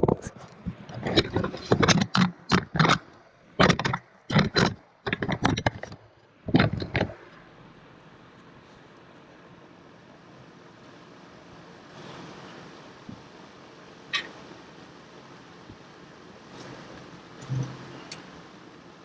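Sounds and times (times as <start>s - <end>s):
faint steady hiss: 6.2s - 19.0s.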